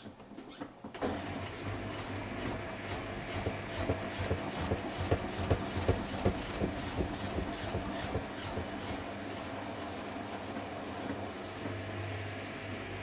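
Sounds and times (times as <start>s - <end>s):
washing machine motor hum: 0.0s - 13.0s
washing machine drum knocking: 1.9s - 9.3s.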